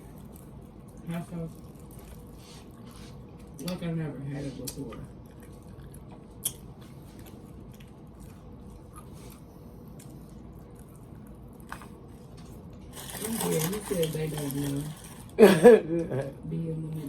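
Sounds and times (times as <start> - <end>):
person chewing: 0.0 - 3.6, 4.7 - 13.7.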